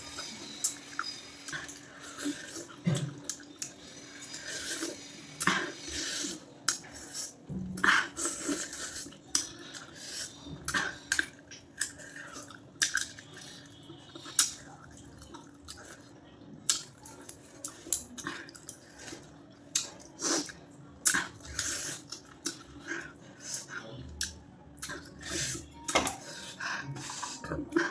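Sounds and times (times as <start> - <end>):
wet chewing smacks and clicks: 16.6 - 18.8.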